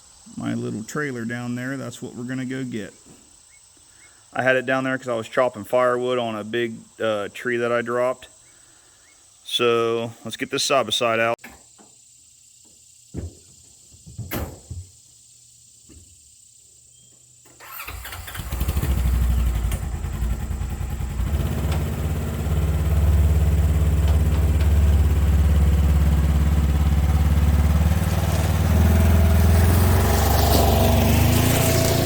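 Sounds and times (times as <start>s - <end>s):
utility vehicle engine starting: 17.5s - 32.0s.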